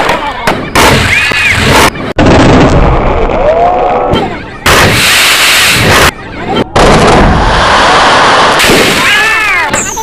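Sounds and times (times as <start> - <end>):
fireworks bangs and crackle: 0.0 - 3.5, 4.1 - 10.0.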